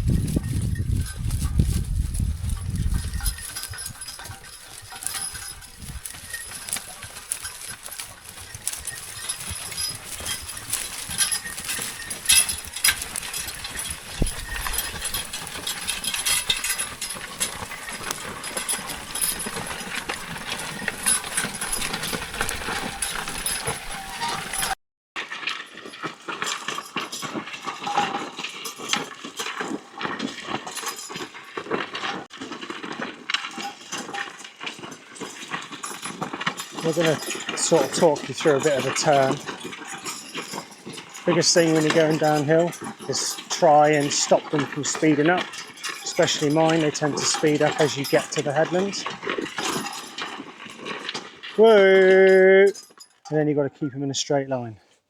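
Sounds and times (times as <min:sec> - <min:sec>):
harness chains clinking: 0:00.0 - 0:53.6
hooves and plough: 0:00.0 - 0:55.0.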